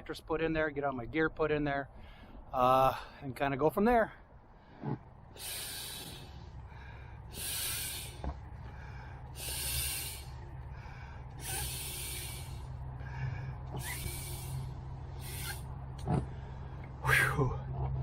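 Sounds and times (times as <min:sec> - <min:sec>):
man inhaling: 0:02.0 - 0:03.2, 0:04.5 - 0:15.7
man blowing into valve: 0:05.4 - 0:06.4, 0:07.3 - 0:08.2, 0:09.4 - 0:10.4, 0:11.4 - 0:12.7, 0:13.7 - 0:15.7.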